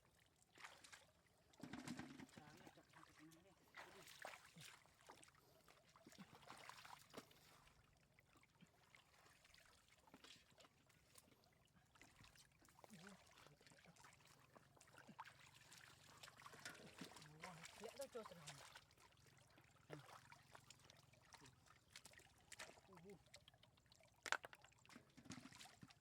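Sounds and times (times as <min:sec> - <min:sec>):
water trickling and splashing: 0:00.0 - 0:26.0.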